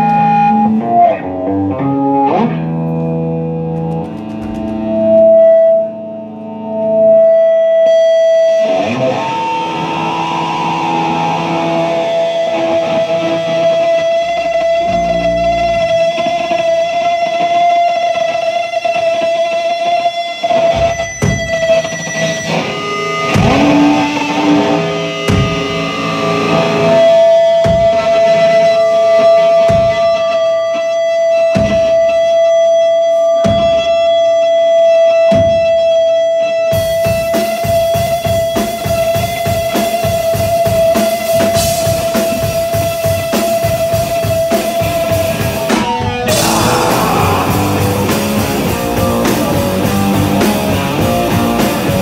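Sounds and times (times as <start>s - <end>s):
guitar feedback ringing: 0.0s - 19.5s, 46.3s - 52.0s
distorted electric guitar: 0.0s - 52.0s
heavy drum hits: 3.8s - 5.3s, 46.3s - 52.0s
bass notes: 13.7s - 17.3s, 46.3s - 52.0s.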